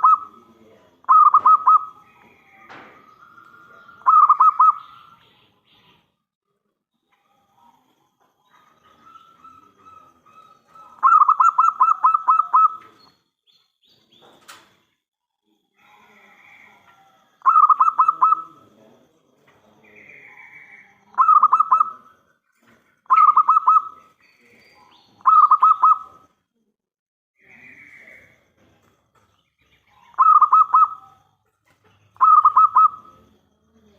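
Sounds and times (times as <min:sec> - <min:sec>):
dove cooing: 0:00.0 - 0:05.1, 0:08.4 - 0:13.0, 0:15.8 - 0:18.7, 0:20.1 - 0:22.3, 0:23.1 - 0:24.1, 0:25.2 - 0:26.2, 0:30.0 - 0:31.3, 0:32.2 - 0:33.4.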